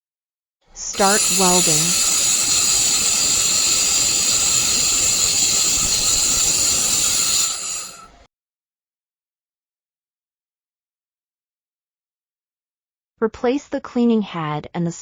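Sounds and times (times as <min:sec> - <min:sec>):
welding gun gas hissing: 0:00.8 - 0:08.2
high whistling tones: 0:00.8 - 0:08.3.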